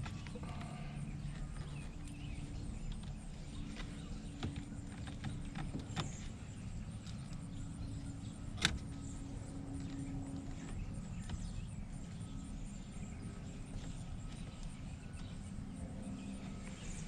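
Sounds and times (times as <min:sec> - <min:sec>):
light clicks and knocks: 0:00.0 - 0:12.5
steady low hum: 0:00.0 - 0:17.0.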